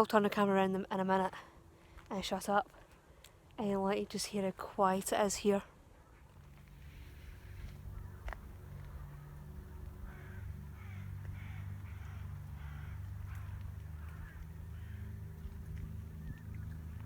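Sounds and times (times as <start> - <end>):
distant harsh bird calls: 6.0 - 17.0
steady low rumble: 6.3 - 17.0.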